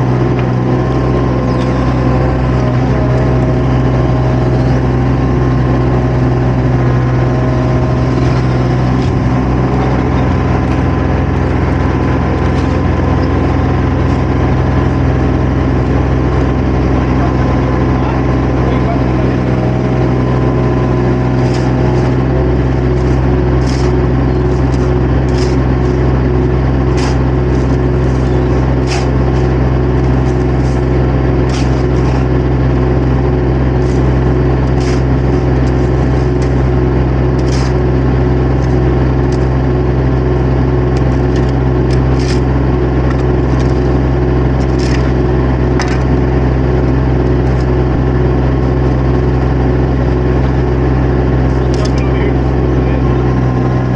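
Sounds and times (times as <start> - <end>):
diesel engine running: 0.0 - 53.9.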